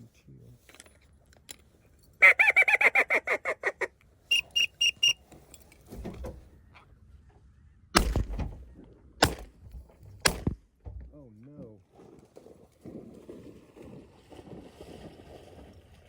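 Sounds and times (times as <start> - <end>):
duck call quacking: 2.2 - 5.2
high whistled peeps: 4.3 - 5.2
shotgun shots: 8.0 - 10.6.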